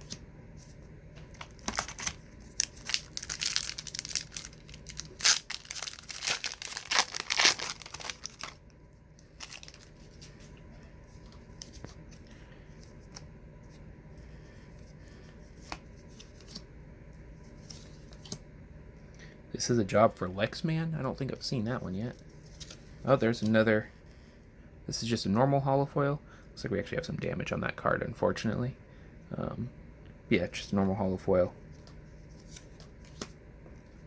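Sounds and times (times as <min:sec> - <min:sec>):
wrapper crinkling and tearing: 0:01.4 - 0:08.7, 0:09.3 - 0:10.3.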